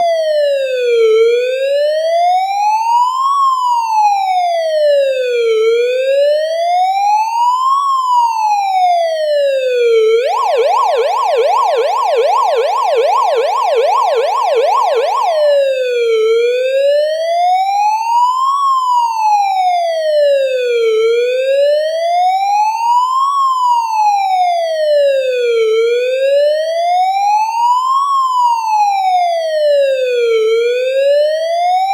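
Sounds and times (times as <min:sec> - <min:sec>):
police siren wailing and yelping: 0:06.8 - 0:26.0.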